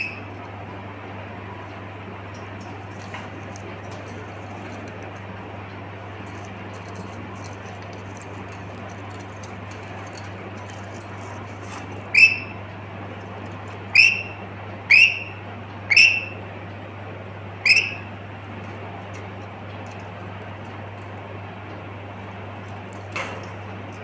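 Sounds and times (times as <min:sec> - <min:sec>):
parrot shrill calls: 0:00.0 - 0:00.2, 0:12.1 - 0:12.6, 0:13.9 - 0:16.4, 0:17.6 - 0:18.1
steady background hum: 0:00.0 - 0:24.0.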